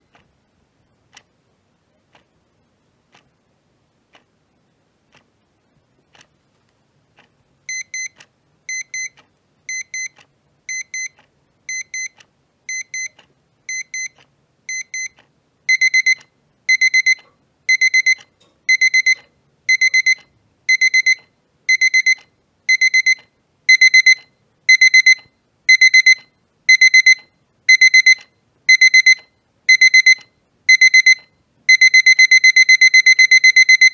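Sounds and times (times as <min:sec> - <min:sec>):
kitchen timer alarm beeps: 0:07.7 - 0:33.9
kitchen timer ticking: 0:07.7 - 0:33.9.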